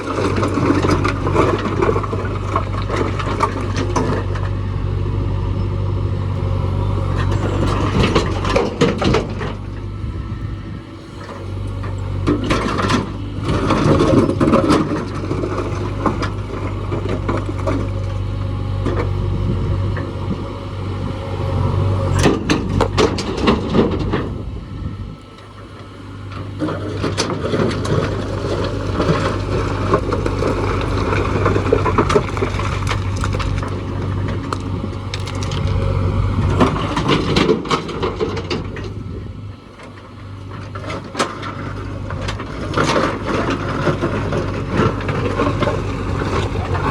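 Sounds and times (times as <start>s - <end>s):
earth and stones scraping and clattering: 0.0s - 4.6s, 26.4s - 39.0s, 40.5s - 46.9s
diesel engine running: 0.0s - 46.9s.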